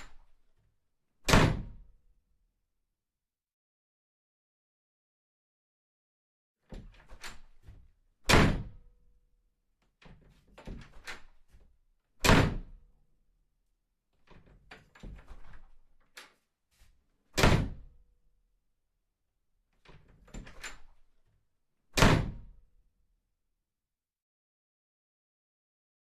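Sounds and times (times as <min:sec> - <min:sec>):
door closing with a thud: 0:01.3 - 0:01.8, 0:06.7 - 0:08.8, 0:12.2 - 0:12.8, 0:17.4 - 0:17.9, 0:22.0 - 0:22.5.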